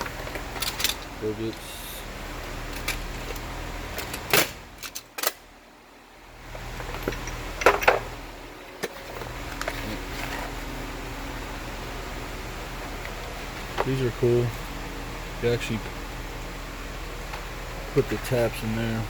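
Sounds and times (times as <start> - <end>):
metal tools clinking: 0.0 - 1.8, 6.7 - 10.6
background hum: 0.0 - 19.0.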